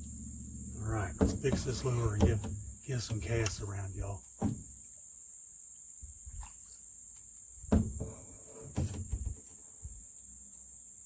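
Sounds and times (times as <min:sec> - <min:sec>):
crickets and insects chirping: 0:00.0 - 0:11.0
dull knocks of gear in canoe: 0:01.0 - 0:03.7, 0:04.3 - 0:04.8, 0:07.7 - 0:09.5.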